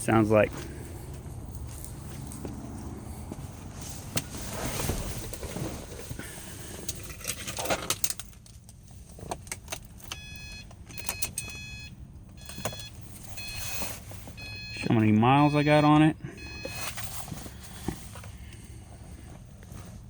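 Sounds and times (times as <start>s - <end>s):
car engine idling: 0.0s - 20.0s
electronic chime beeping: 10.2s - 13.8s, 14.4s - 16.8s.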